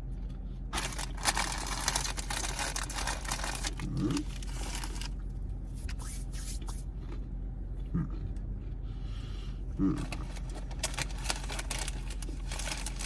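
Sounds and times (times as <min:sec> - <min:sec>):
plastic snack bag crinkling: 0:00.8 - 0:05.2, 0:10.0 - 0:13.0.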